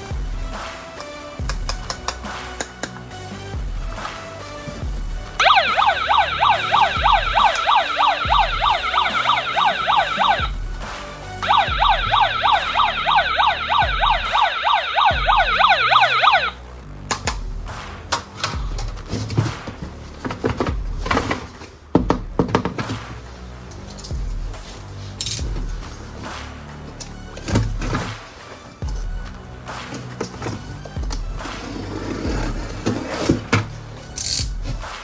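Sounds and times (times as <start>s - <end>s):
background music with low beat: 0.0s - 35.0s
warbling toy siren tone: 5.4s - 10.7s, 11.4s - 16.6s.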